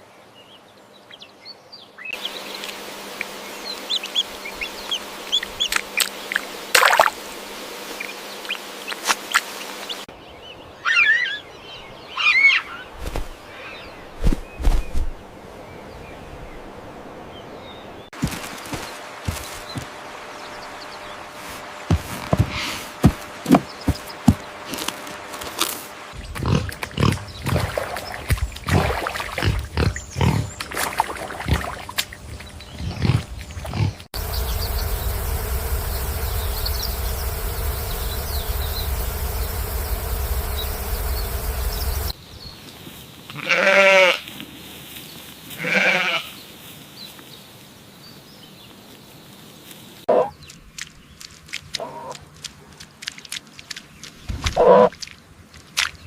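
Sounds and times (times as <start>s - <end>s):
wavering animal cries: 10.8s - 11.4s, 12.2s - 12.8s
low rumble: 34.2s - 42.2s.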